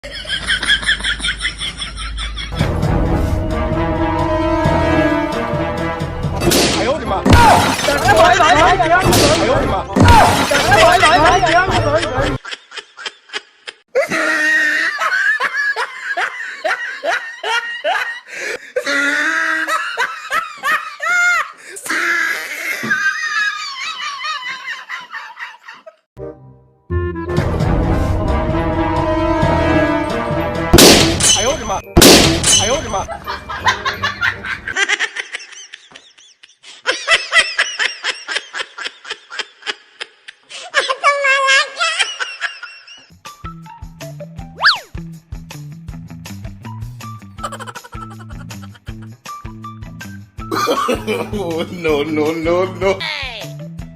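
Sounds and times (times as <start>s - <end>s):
people laughing: 0.0s - 2.8s, 7.8s - 26.0s, 32.6s - 43.1s, 47.4s - 49.0s, 50.5s - 52.7s.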